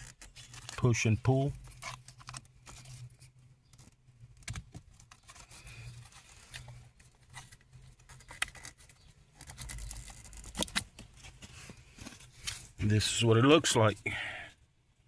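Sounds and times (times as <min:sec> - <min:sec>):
plastic clicks and scrapes: 0:01.6 - 0:11.2.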